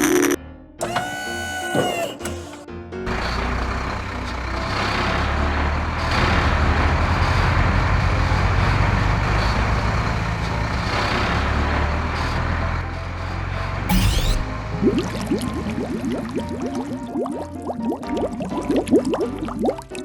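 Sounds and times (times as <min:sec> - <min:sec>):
heavy vehicle engine rumbling: 0:01.9 - 0:14.8.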